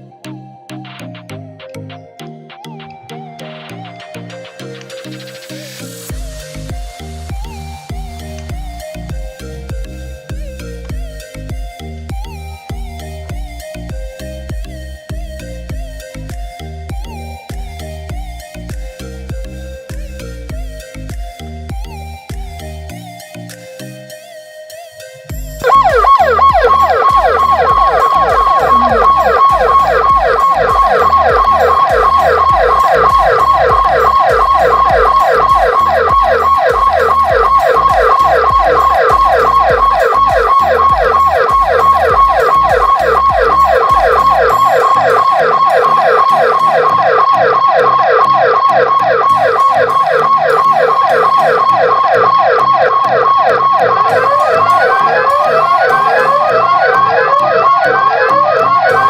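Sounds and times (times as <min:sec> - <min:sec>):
electronic alarm siren: 0:02.3 - 0:09.9, 0:25.6 - 0:59.0.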